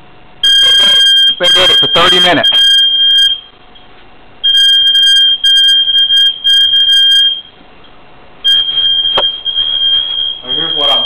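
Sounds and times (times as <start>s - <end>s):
fire alarm shrill beeps: 0.4s - 3.6s, 4.4s - 7.6s, 8.4s - 11.0s
person speaking: 1.4s - 2.6s.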